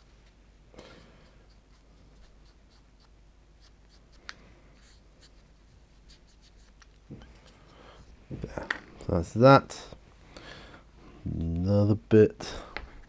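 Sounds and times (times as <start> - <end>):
paintbrush scratching: 1.3 - 4.2.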